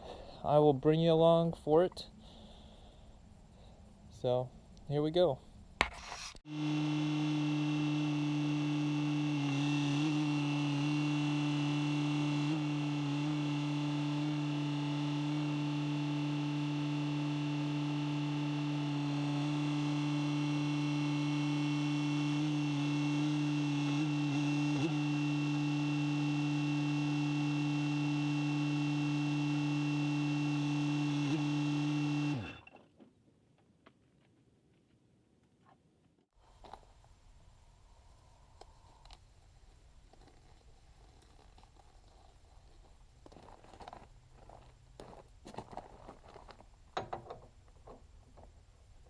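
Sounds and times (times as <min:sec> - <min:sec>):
diesel engine running: 0:06.5 - 0:32.6
engine winding down: 0:06.5 - 0:32.7.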